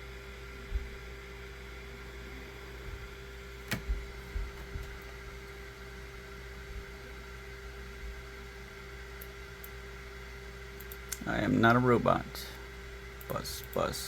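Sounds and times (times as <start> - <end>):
electrical hum: 0.0 - 14.0
soft low thumps: 0.7 - 1.1, 2.8 - 5.0.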